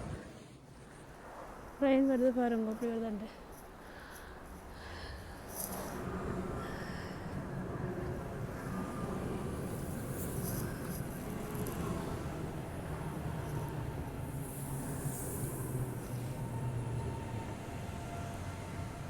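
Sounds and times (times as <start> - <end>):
train rumbling past: 6.0 - 19.0.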